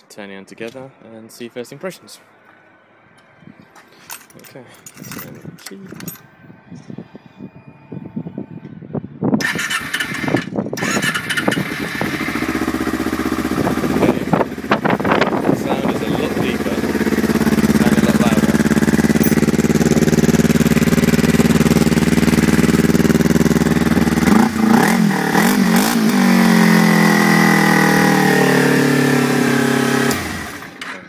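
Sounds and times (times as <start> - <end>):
motorcycle engine idling and revving: 9.1 - 31.0.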